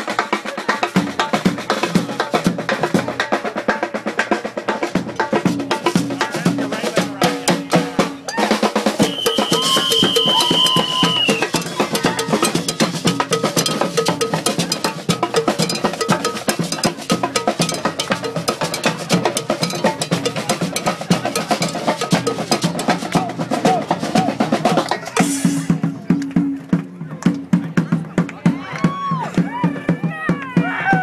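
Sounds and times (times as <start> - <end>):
snare drum: 0.0 - 31.0
held high note: 9.0 - 12.7
cowbell: 9.0 - 25.1.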